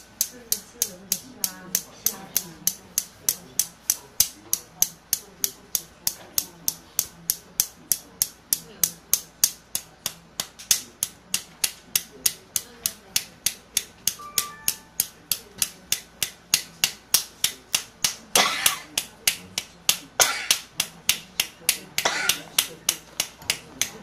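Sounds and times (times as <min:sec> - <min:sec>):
palm slapping on chest: 0:15.0 - 0:24.0.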